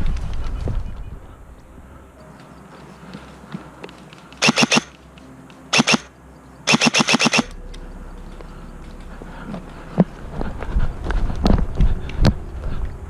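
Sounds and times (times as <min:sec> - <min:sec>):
airsoft gun firing bursts: 0:04.4 - 0:04.9, 0:05.8 - 0:06.1, 0:06.7 - 0:07.5.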